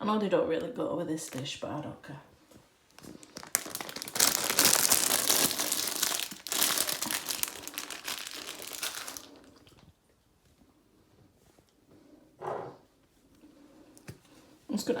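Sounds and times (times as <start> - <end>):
packet crinkling and rustling: 2.8 - 9.8.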